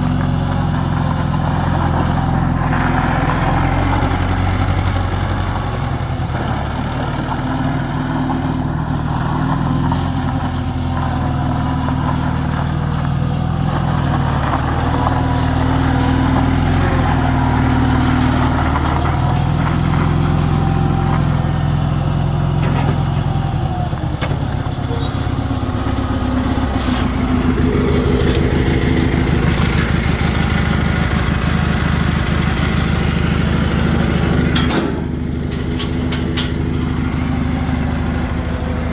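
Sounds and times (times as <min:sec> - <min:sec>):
skid steer engine running: 0:00.0 - 0:38.9.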